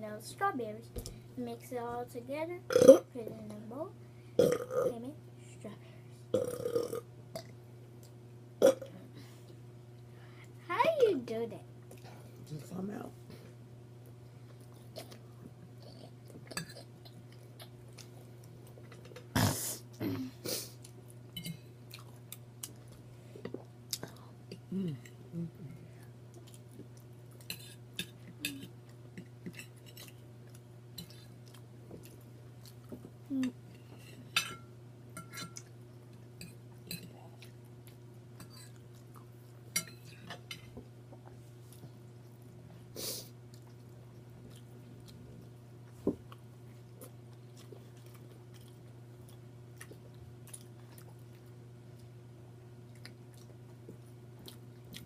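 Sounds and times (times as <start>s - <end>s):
steady low hum: 0.0s - 55.0s
people chewing: 20.6s - 34.1s, 43.4s - 52.2s.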